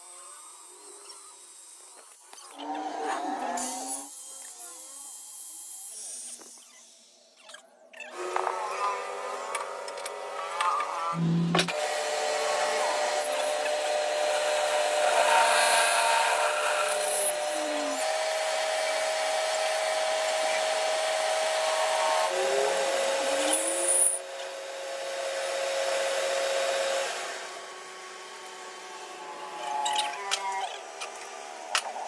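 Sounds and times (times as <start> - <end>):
lathe whining and grinding: 8.2 - 24.8.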